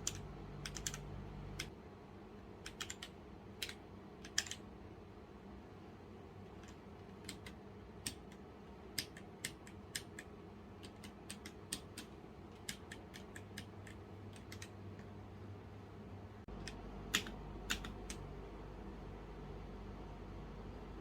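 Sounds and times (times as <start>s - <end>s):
mechanical keyboard keys clicking: 0.0s - 1.7s, 2.6s - 4.6s, 6.6s - 15.1s, 16.6s - 18.2s.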